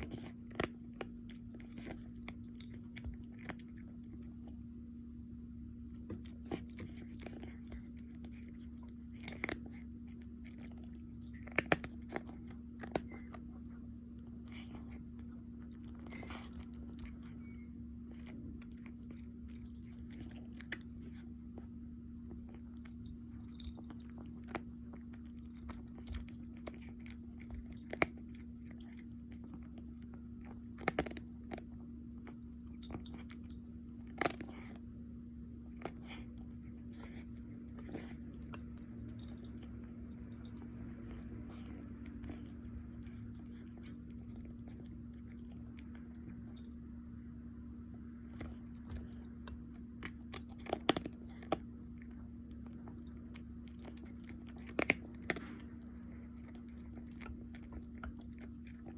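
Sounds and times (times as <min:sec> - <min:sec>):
animal chewing dry food: 0:00.0 - 0:04.6, 0:05.9 - 0:46.9, 0:48.1 - 0:58.9
steady low hum: 0:00.0 - 0:58.9.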